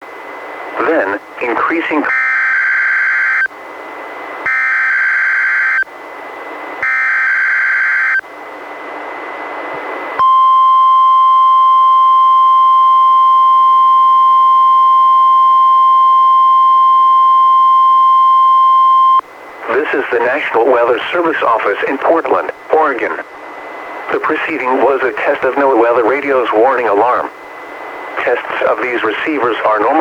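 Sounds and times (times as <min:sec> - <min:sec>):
radio hiss: 0:00.4 - 0:02.2, 0:19.5 - 0:30.0
steady warning alarm tone: 0:00.8 - 0:08.3, 0:10.2 - 0:22.8.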